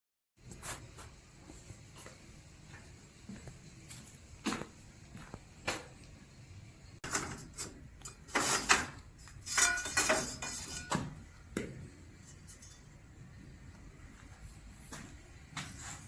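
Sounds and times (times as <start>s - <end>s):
metal file scraping saw teeth: 7.4s - 10.9s.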